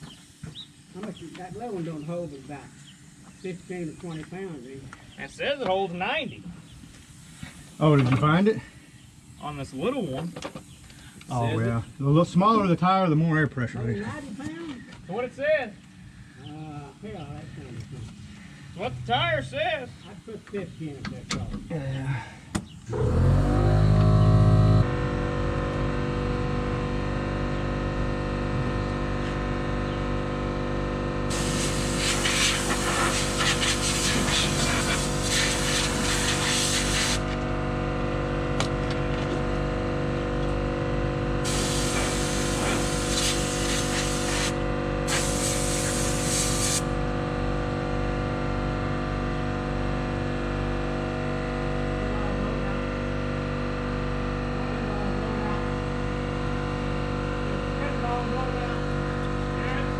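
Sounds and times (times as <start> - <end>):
compressed air hissing: 0.0 - 5.2, 6.6 - 12.0, 31.3 - 37.3, 41.4 - 47.0
engine running steadily: 22.9 - 59.9.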